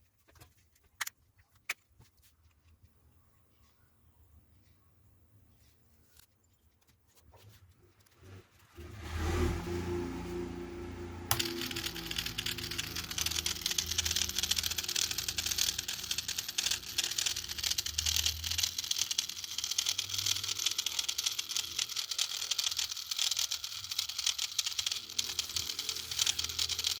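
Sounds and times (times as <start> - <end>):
microwave low hum: 9.5 - 18.9
microwave motor clicking rattle: 11.3 - 27.0.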